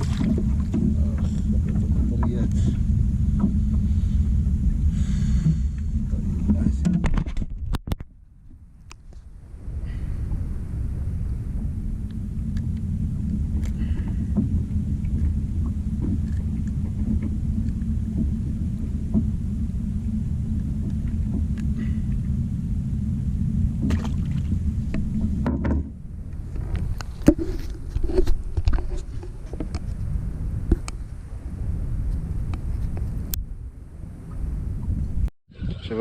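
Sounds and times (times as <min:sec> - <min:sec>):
wind noise on microphone: 0:00.0 - 0:36.0
knocks and clatter: 0:24.9 - 0:26.0.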